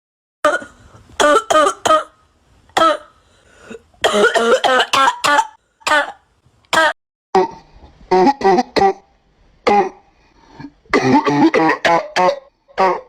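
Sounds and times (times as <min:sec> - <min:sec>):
person coughing: 0:02.8 - 0:03.1, 0:04.0 - 0:06.2, 0:09.7 - 0:10.0, 0:10.6 - 0:13.0.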